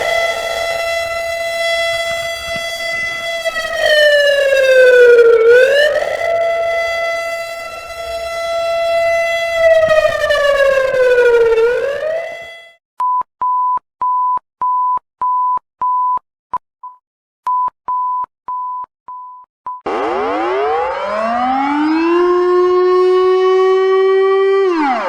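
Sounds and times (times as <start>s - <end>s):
emergency siren tone: 0.0s - 12.8s, 19.8s - 25.0s.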